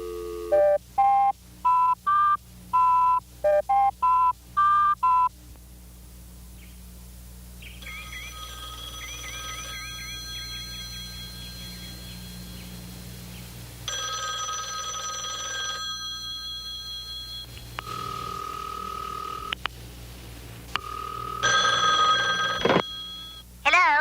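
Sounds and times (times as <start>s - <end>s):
steady phone line tone: 7.6s - 19.6s, 20.8s - 23.5s
telephone bell ringing: 7.8s - 12.8s, 13.9s - 19.5s, 20.8s - 23.4s.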